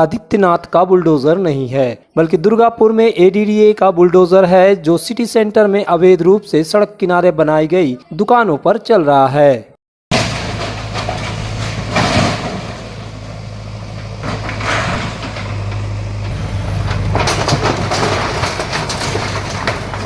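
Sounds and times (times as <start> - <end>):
demolition noise: 10.1 - 20.0
bulldozer diesel engine drone: 10.2 - 20.0.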